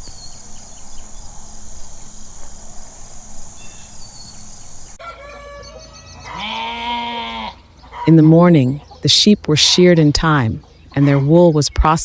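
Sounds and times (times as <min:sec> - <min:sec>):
crickets chirring: 0:00.0 - 0:05.0
chickens clucking: 0:00.0 - 0:06.5, 0:07.5 - 0:12.0
rooster crowing: 0:00.0 - 0:08.1.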